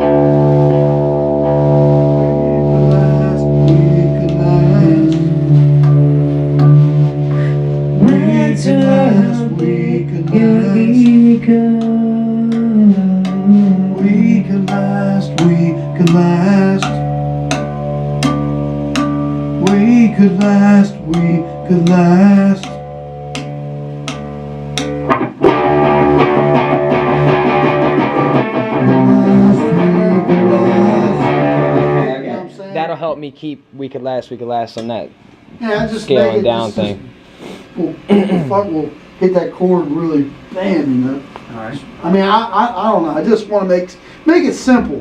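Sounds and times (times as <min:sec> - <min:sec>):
drum and cymbal strikes: 0:00.0 - 0:29.6
electric guitar chords: 0:00.0 - 0:32.7
heavy metal band playing: 0:24.7 - 0:32.2.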